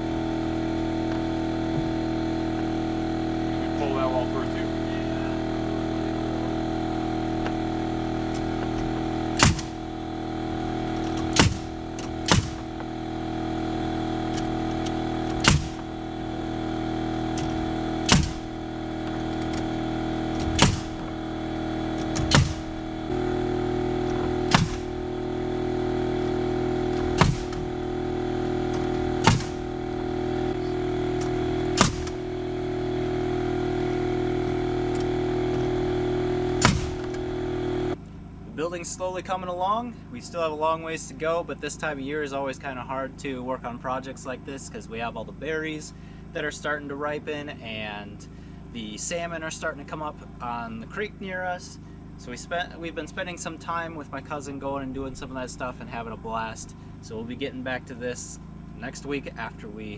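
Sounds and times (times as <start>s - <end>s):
steady droning background: 0.0s - 59.9s
nail gun firing: 9.3s - 10.0s, 11.0s - 12.9s, 14.2s - 16.0s, 17.4s - 18.7s, 20.4s - 21.1s, 22.0s - 22.8s, 24.1s - 25.0s, 26.9s - 27.9s, 28.6s - 29.8s, 31.2s - 32.3s, 36.6s - 37.2s.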